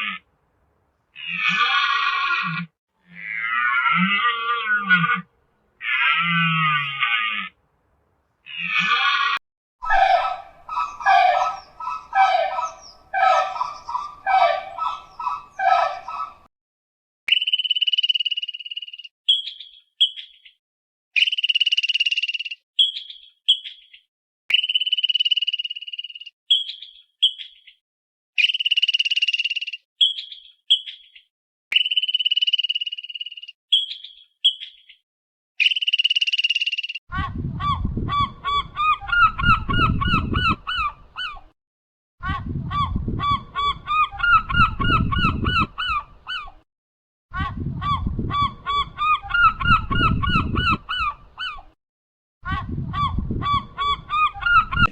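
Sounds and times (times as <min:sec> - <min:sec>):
geese honking: 0:09.8 - 0:16.5
high trilled call: 0:09.8 - 0:16.5
short pulsed animal calls: 0:09.8 - 0:16.5.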